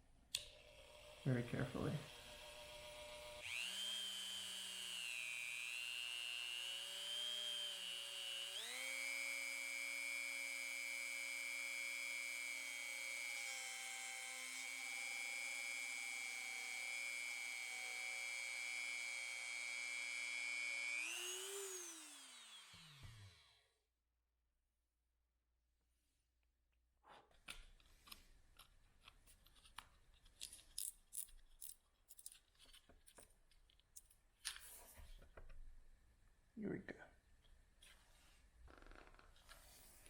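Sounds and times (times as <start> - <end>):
rotary tool whining: 0.4 - 23.6.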